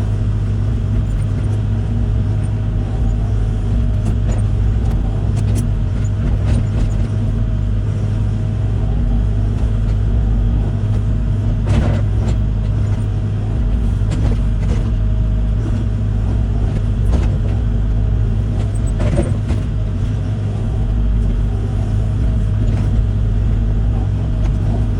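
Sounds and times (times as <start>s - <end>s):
heavy machine engine droning: 0.0s - 24.9s.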